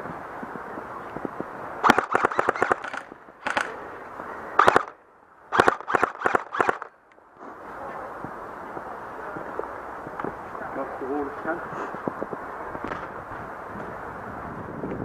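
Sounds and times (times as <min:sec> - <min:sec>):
airsoft guns firing: 0:01.8 - 0:03.8, 0:04.6 - 0:07.0.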